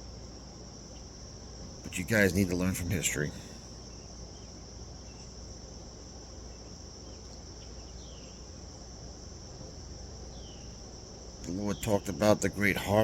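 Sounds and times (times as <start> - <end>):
insects chorus: 0.0 - 13.0
faint bird chirps: 6.5 - 8.5, 10.3 - 10.8.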